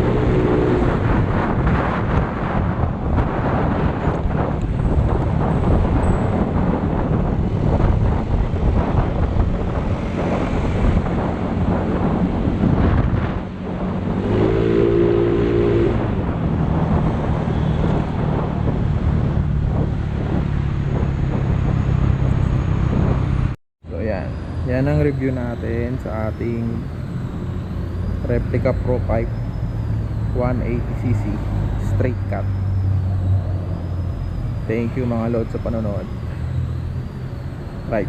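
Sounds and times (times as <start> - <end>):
wind buffeting microphone: 0.0 - 23.6.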